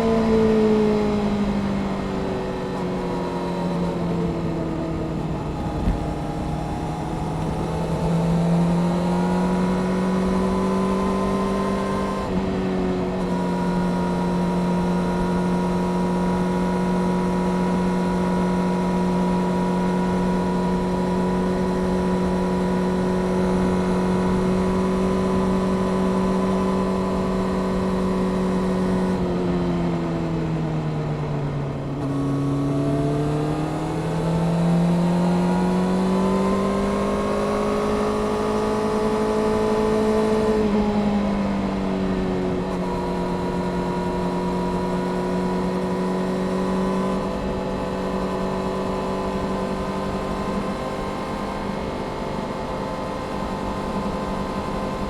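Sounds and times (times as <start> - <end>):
motorcycle engine: 0.0 - 55.0
wind noise: 4.3 - 8.4.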